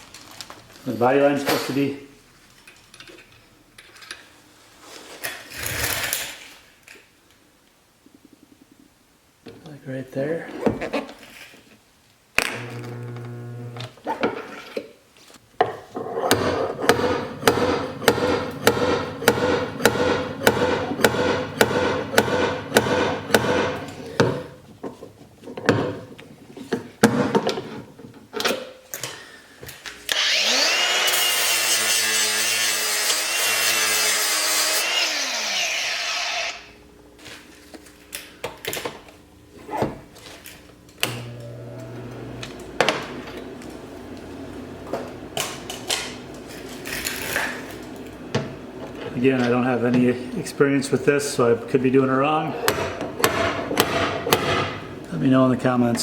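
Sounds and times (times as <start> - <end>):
power tool whining: 12.4 - 13.9, 30.1 - 36.7.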